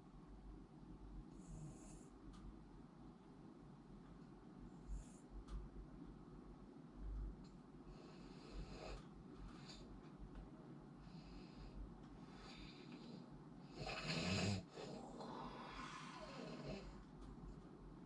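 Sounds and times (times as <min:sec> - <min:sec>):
person snoring: 0:13.7 - 0:17.0.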